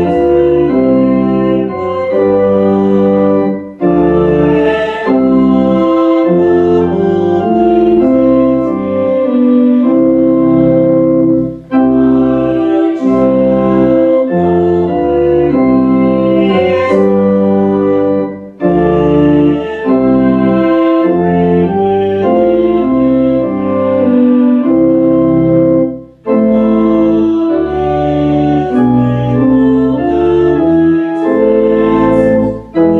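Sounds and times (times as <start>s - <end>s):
church organ playing hymn: 0.0s - 32.9s.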